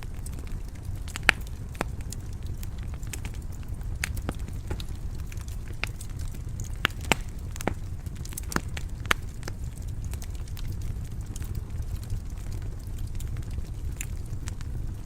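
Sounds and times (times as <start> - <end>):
fire crackles and pops: 0.0 - 15.0
wood fire rumbling: 0.0 - 15.0.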